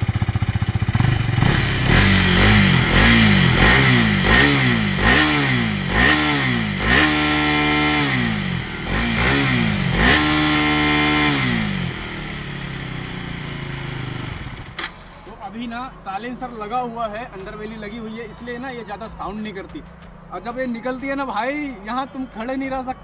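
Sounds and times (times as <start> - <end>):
motorcycle engine revving: 0.0 - 15.1.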